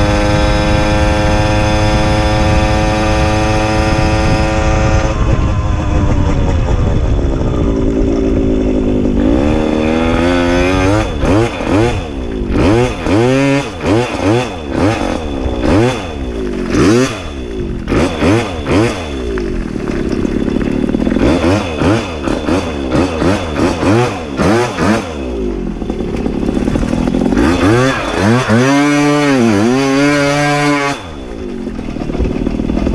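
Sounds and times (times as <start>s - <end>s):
wind rumble on microphone: 0.0s - 21.2s
moped engine revving: 0.0s - 32.9s.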